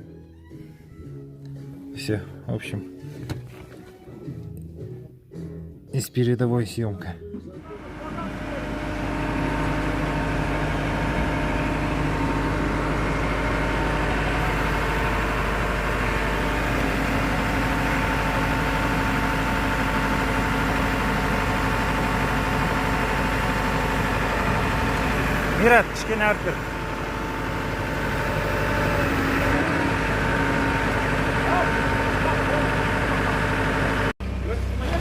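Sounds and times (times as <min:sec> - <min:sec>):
heavy diesel engine running: 0:07.6 - 0:35.0.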